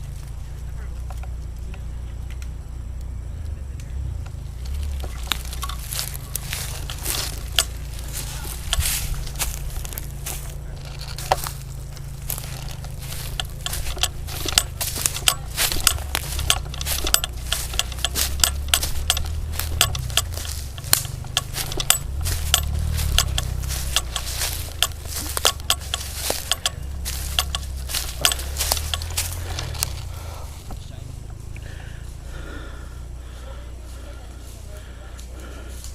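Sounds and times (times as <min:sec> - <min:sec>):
footsteps crunching dry leaves: 0:04.5 - 0:32.4.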